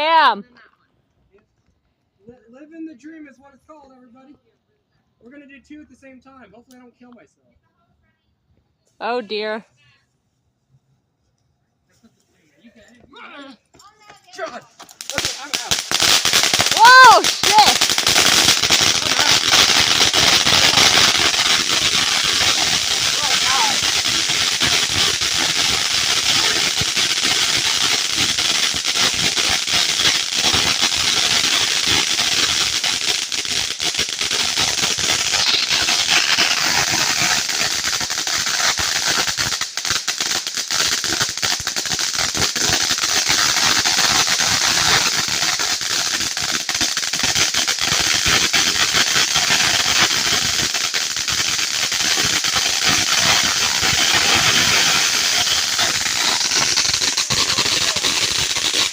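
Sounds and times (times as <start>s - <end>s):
fireworks crackling: 0.0s - 0.5s, 12.0s - 58.9s.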